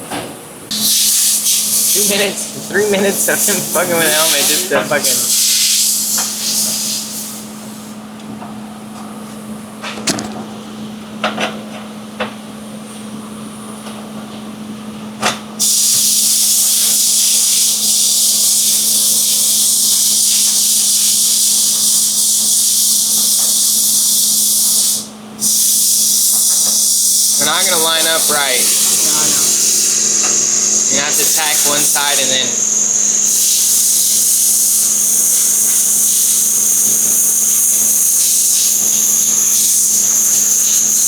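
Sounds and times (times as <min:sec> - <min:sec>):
electrical hum: 0:00.7 - 0:06.8, 0:26.0 - 0:41.0
welding arc hissing: 0:00.7 - 0:08.0, 0:15.6 - 0:41.0.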